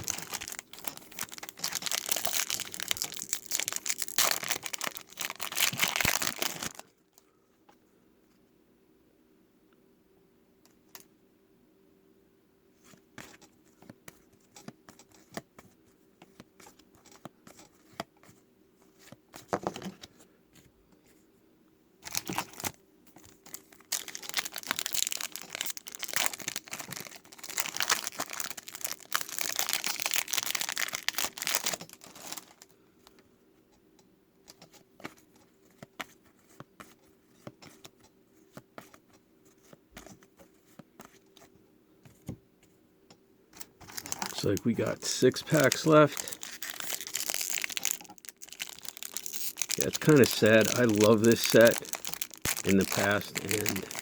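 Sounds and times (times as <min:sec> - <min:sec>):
wrapper crinkling and tearing: 0:00.0 - 0:06.8, 0:22.0 - 0:32.7, 0:43.8 - 0:54.0.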